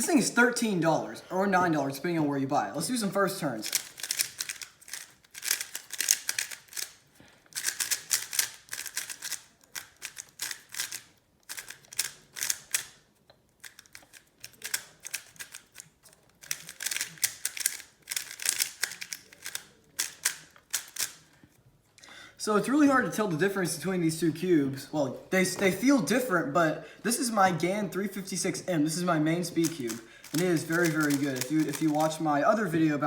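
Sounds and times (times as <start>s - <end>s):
plastic puzzle cube clicking: 3.5s - 13.0s, 13.6s - 21.3s, 29.6s - 32.2s.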